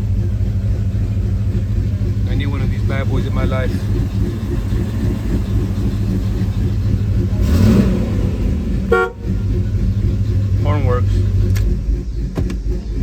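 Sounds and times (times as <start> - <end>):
car engine idling and revving: 0.0 - 13.0
car horn beep: 7.4 - 9.5.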